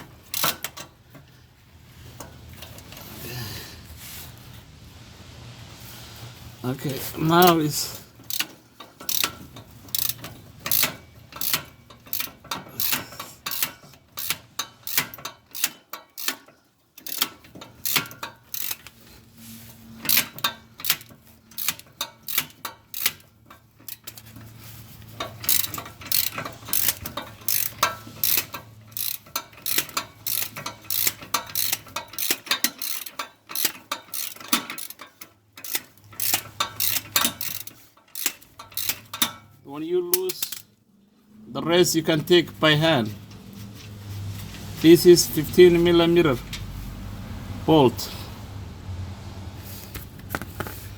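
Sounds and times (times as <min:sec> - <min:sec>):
ratchet wrench clicking: 0:00.2 - 0:01.4, 0:08.2 - 0:19.1, 0:20.0 - 0:39.5, 0:40.2 - 0:40.8.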